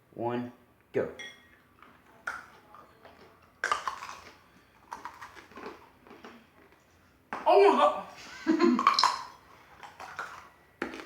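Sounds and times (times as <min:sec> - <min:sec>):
crunching candy and cookies: 0:01.8 - 0:07.0, 0:08.8 - 0:11.0.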